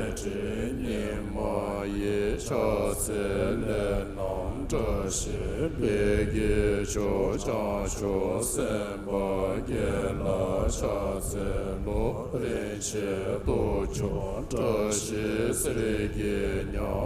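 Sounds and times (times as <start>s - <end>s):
monks chanting: 0.0s - 17.0s.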